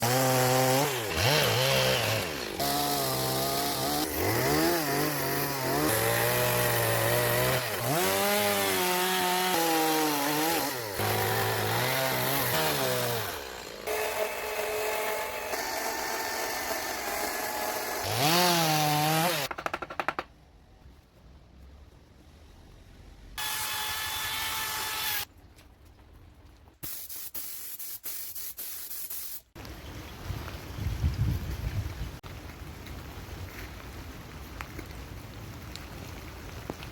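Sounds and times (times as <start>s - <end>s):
chainsaw cutting wood: 0.0s - 20.2s, 23.4s - 25.3s.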